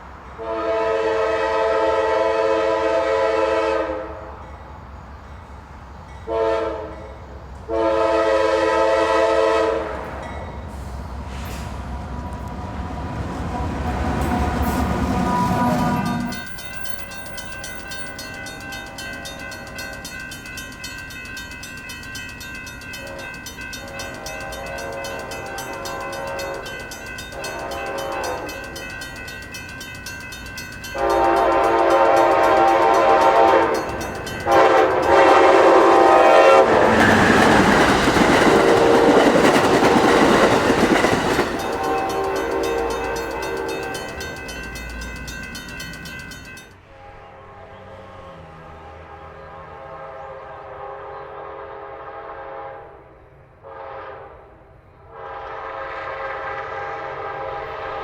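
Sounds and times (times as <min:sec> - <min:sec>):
low train rumble: 0:00.0 - 0:58.0
train passing: 0:00.0 - 0:58.0
locomotive air horn blasts: 0:00.4 - 0:04.2, 0:06.3 - 0:06.9, 0:07.7 - 0:10.1, 0:15.2 - 0:16.3, 0:31.0 - 0:40.3, 0:41.6 - 0:43.9, 0:46.9 - 0:58.0.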